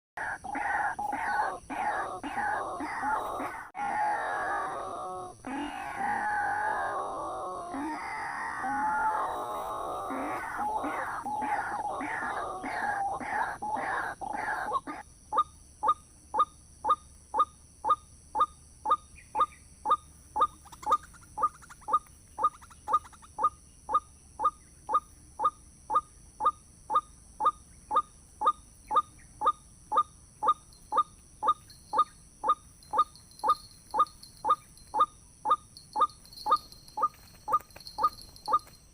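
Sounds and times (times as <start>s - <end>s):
waterhen call repeated: 0.2s - 15.0s.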